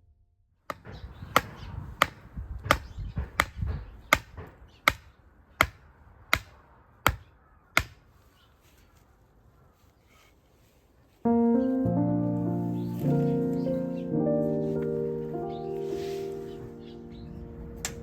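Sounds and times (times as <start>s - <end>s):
sharp knocks: 0.7s - 8.1s.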